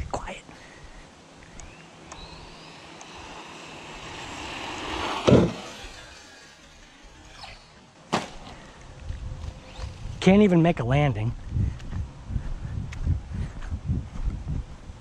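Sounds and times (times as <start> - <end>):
rc car electric drive whirring: 1.5 - 10.5
rc car landing thud: 2.9 - 8.6.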